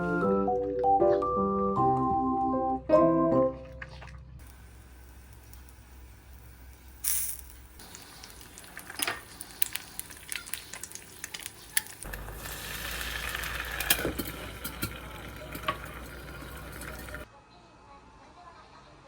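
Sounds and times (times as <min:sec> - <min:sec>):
food sizzling: 0:04.4 - 0:17.3.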